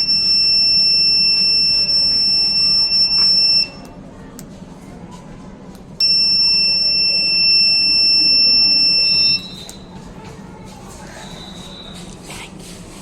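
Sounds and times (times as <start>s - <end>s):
high-pitched alarm buzzer: 0.0s - 3.8s, 6.0s - 9.7s.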